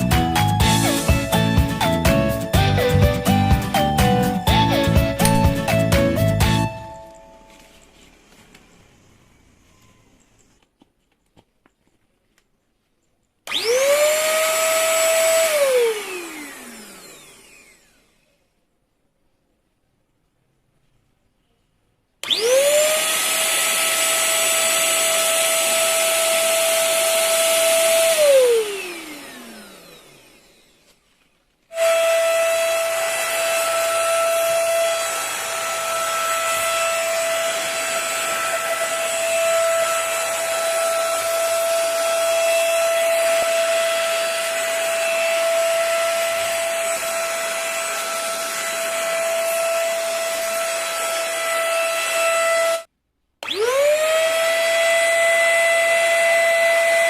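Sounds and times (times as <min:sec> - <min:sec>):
vacuum cleaner motor whine: 0:06.5 - 0:10.6, 0:13.5 - 0:18.6, 0:22.2 - 0:57.0.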